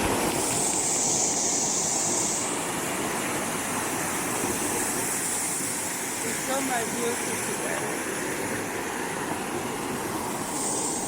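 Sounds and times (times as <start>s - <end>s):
small waterfall rushing: 0.0s - 11.0s.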